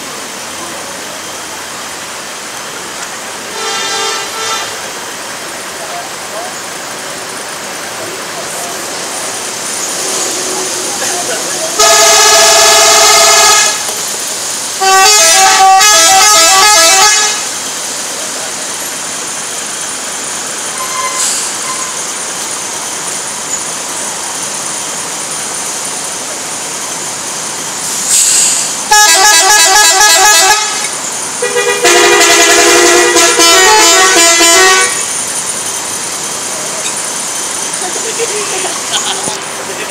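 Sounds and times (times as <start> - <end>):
steady traffic noise: 0.0 - 39.9
bus horns playing short tunes: 3.5 - 4.8, 11.8 - 13.9, 14.8 - 17.5, 20.8 - 21.9, 28.9 - 35.0.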